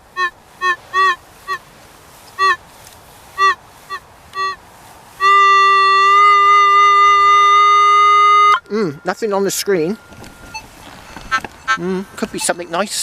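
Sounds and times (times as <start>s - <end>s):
metal detector continuous tone: 0.1s - 1.6s, 5.2s - 13.0s
metal detector beeps: 0.2s - 1.6s, 3.4s - 4.6s, 5.2s - 13.0s.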